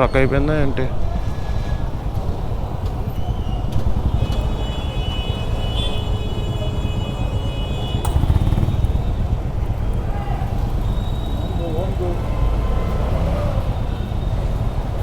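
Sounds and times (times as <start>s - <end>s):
traffic: 0.0s - 15.0s
motorcycle rumble: 8.0s - 10.8s.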